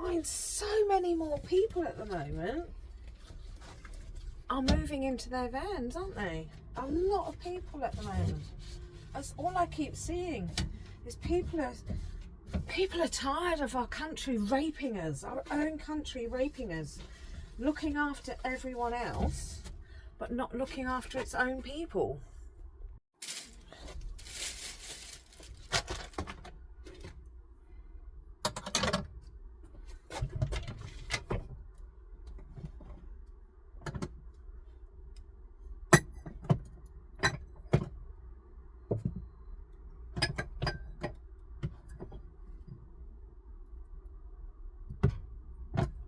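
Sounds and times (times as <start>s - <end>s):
rustling: 23.2s - 26.4s.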